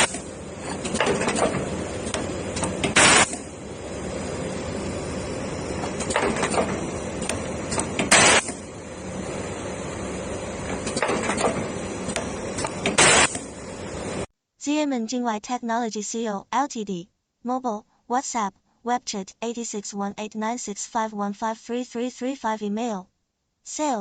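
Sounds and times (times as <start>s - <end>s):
loud hiss bursts: 0.0s - 1.0s, 1.7s - 3.6s, 7.2s - 14.3s
soldering machine running: 0.0s - 14.3s.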